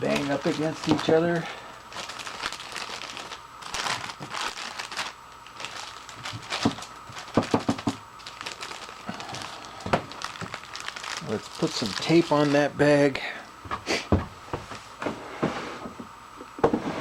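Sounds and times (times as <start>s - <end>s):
bag crinkling: 0.0s - 12.8s.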